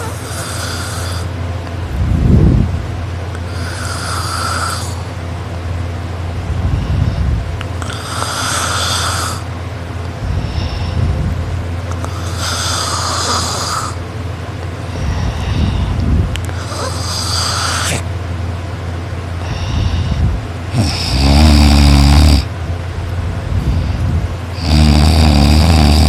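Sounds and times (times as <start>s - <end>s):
person snoring loudly: 0.0s - 1.3s, 3.5s - 5.0s, 6.9s - 9.5s, 12.0s - 14.0s, 16.6s - 18.1s, 19.4s - 22.5s, 24.5s - 26.0s
low hum: 0.0s - 3.6s, 4.9s - 13.0s, 13.9s - 20.8s, 22.4s - 24.6s.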